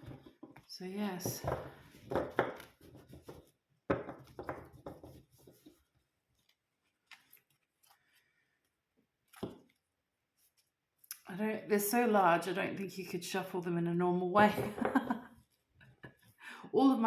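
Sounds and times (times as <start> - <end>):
cards rustling and sliding: 4.9 - 9.8.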